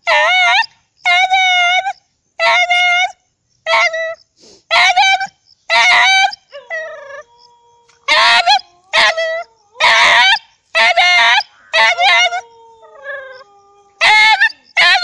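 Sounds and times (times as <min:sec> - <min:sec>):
dog yowling: 0:03.7 - 0:15.0.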